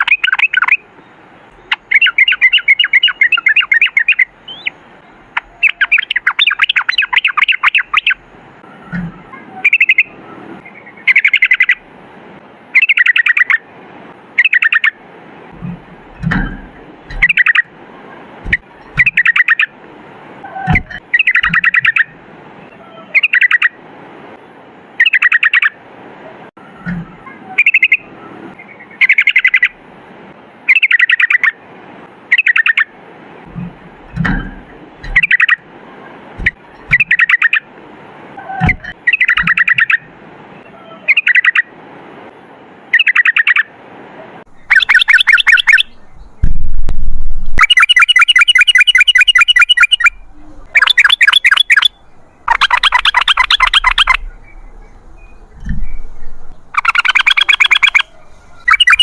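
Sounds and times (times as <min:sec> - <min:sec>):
bulbul singing: 0:00.0 - 0:08.2, 0:09.6 - 0:11.8, 0:16.1 - 0:17.7, 0:18.4 - 0:19.8, 0:20.6 - 0:22.2, 0:34.0 - 0:35.6, 0:36.4 - 0:37.6, 0:38.5 - 0:40.1, 0:44.5 - 0:59.0
low thuds: 0:15.5 - 0:17.4, 0:18.4 - 0:19.3, 0:36.4 - 0:37.1, 0:44.5 - 0:47.7, 0:51.6 - 0:59.0.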